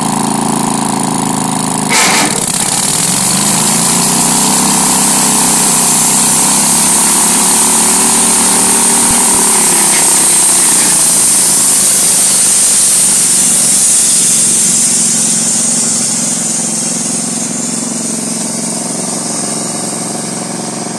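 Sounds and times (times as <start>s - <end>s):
sawmill engine running: 0.0s - 20.9s
high hiss: 5.0s - 19.8s.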